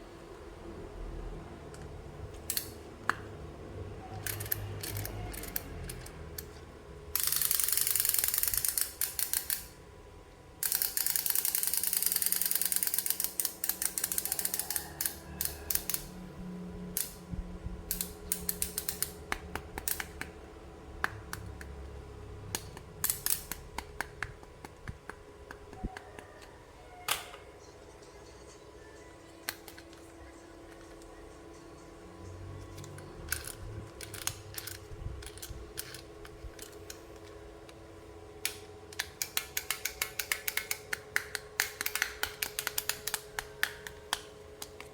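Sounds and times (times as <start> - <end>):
plastic toy parts clicking: 2.5 - 3.2, 4.1 - 6.6, 7.2 - 9.8, 10.6 - 16.1, 17.9 - 20.3, 22.5 - 26.0, 29.4 - 30.1, 32.6 - 37.8, 38.4 - 44.9.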